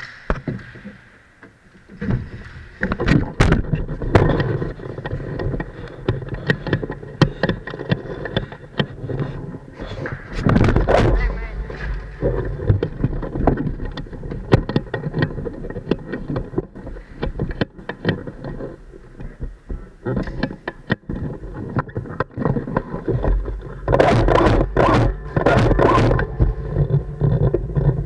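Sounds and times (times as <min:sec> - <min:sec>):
burst of dense noise: 0:10.4 - 0:13.6, 0:23.4 - 0:28.0
low rumble: 0:10.4 - 0:14.3, 0:23.3 - 0:28.0.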